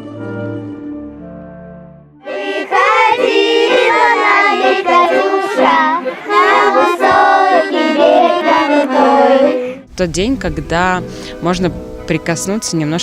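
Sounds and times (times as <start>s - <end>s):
soft instrumental music: 0.0s - 13.0s
children singing: 2.2s - 9.8s.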